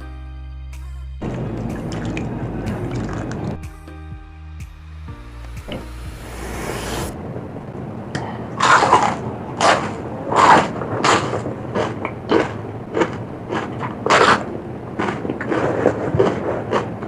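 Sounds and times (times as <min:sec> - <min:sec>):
chewing crunchy food: 0:08.6 - 0:17.0.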